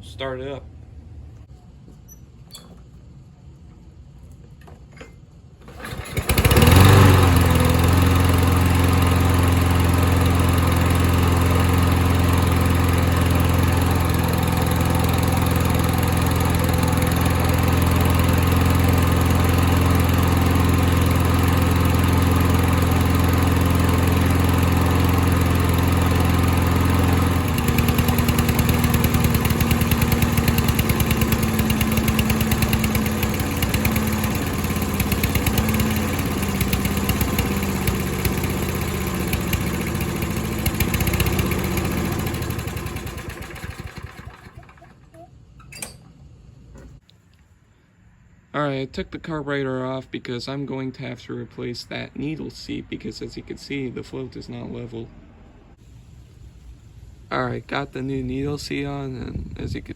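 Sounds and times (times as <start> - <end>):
lawn mower engine running: 5.6 - 45.3.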